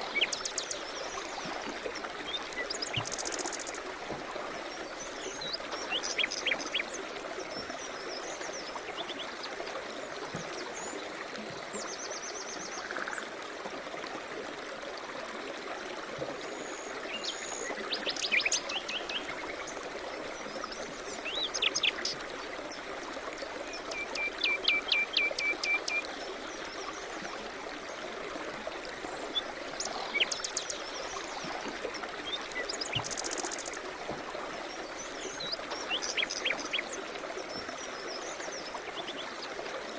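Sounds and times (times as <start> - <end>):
stream running water: 0.0 - 39.9
songbirds singing: 4.6 - 9.4, 20.6 - 22.8, 29.1 - 33.8, 34.7 - 39.5.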